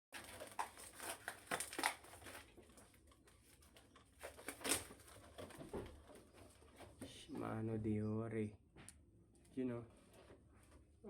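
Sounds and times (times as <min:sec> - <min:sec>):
packaging rustling: 0:00.2 - 0:07.3.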